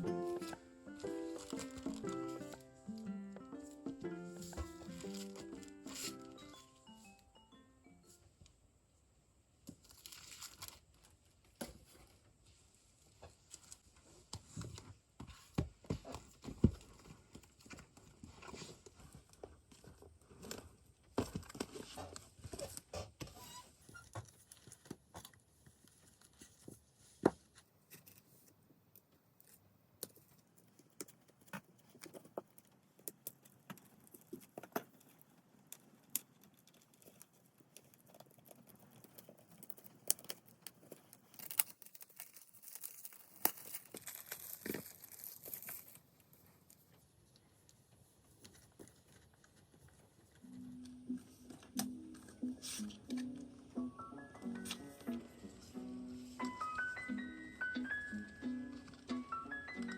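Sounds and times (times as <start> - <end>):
packaging rustling and crinkling: 0.0 - 3.0, 4.4 - 7.2, 9.7 - 11.2, 33.4 - 47.0.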